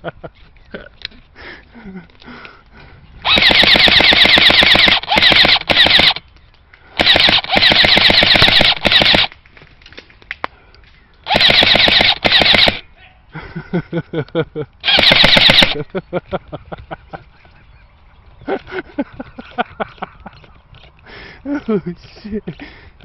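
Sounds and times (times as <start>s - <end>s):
airsoft gun automatic bursts: 3.2s - 6.2s, 7.0s - 9.4s, 11.2s - 12.8s, 14.8s - 15.8s.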